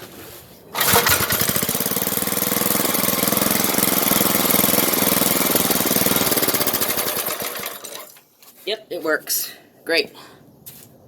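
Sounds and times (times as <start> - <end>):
single-cylinder engine running fast: 0.8 - 8.0.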